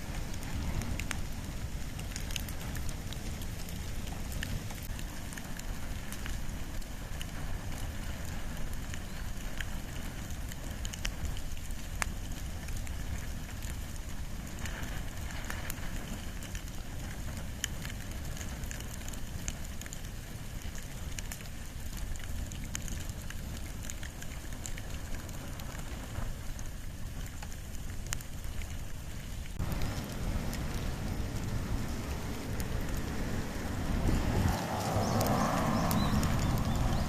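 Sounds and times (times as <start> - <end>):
fire crackling and popping: 0.0 - 37.0
low rumble: 29.6 - 37.0.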